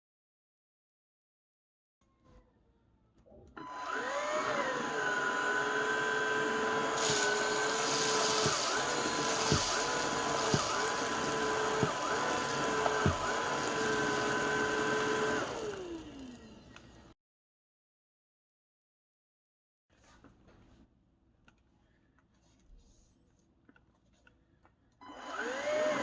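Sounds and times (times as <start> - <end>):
vacuum motor whining: 3.6 - 17.1, 25.0 - 26.0
vacuum hiss: 4.2 - 16.2.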